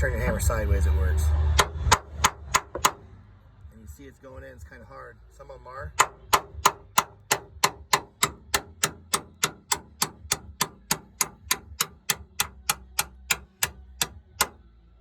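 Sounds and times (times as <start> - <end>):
hammer tapping on steel tool: 1.6 - 3.0, 5.9 - 14.6.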